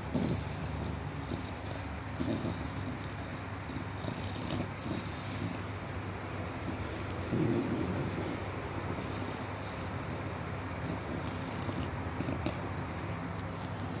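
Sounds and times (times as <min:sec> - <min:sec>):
dog snoring: 0:00.0 - 0:13.1.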